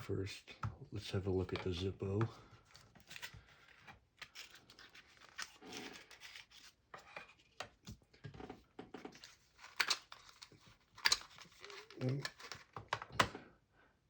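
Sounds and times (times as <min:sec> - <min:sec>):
paper and cardboard tearing and rustling: 0:02.6 - 0:07.4, 0:09.2 - 0:12.8.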